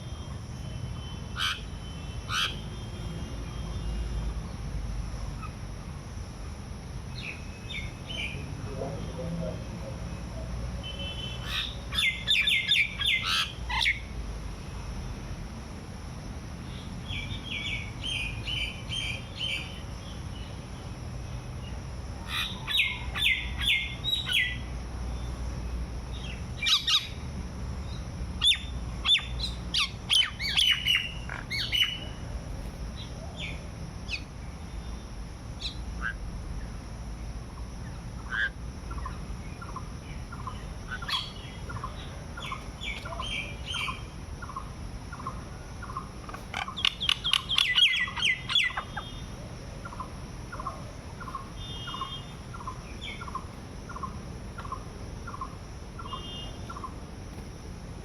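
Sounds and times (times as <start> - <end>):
birds chirping: 0.3 - 4.7, 7.1 - 14.1, 21.6 - 25.4, 28.4 - 32.2, 38.2 - 57.4.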